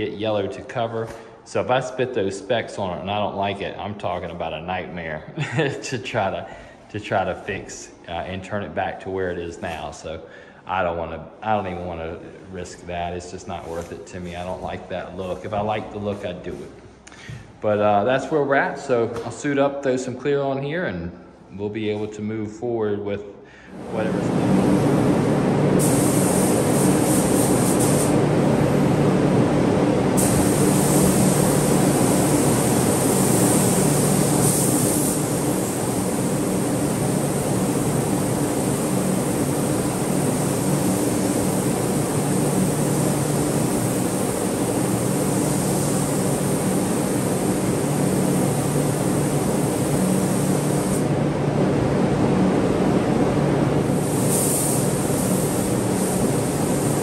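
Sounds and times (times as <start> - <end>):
exhaust fan humming: 23.4 - 57.0
spray gun air hiss: 23.7 - 29.1, 30.1 - 51.2, 53.8 - 57.0.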